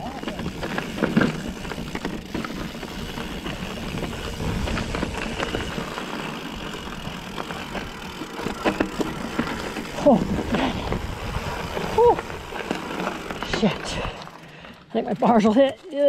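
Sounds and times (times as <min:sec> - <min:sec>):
tyres rumbling over rock: 0:00.0 - 0:14.4
bike rattling and knocking: 0:00.0 - 0:16.0.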